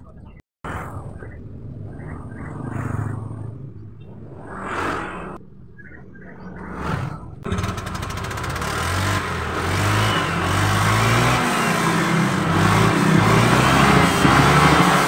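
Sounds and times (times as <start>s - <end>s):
scooter engine revving: 7.4s - 15.0s.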